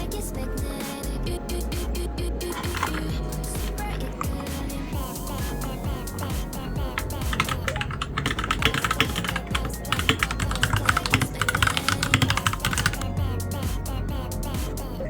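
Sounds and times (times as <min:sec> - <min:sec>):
background music: 0:00.0 - 0:15.0
mechanical keyboard typing: 0:02.5 - 0:13.1.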